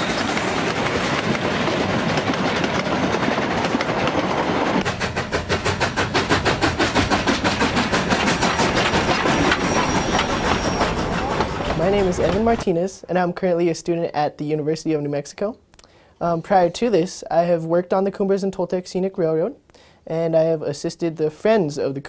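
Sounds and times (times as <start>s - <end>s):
train running on rails: 0.0s - 12.7s.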